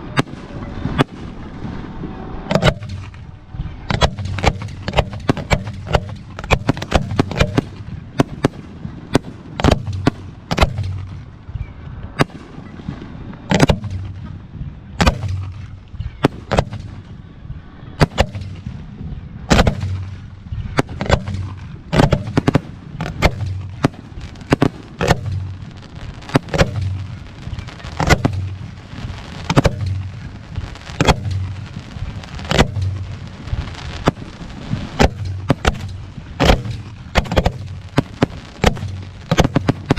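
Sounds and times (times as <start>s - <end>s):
low rumble: 0.0s - 39.9s
firework shells bursting: 2.5s - 3.3s, 3.9s - 11.4s, 13.5s - 14.3s, 19.5s - 39.9s.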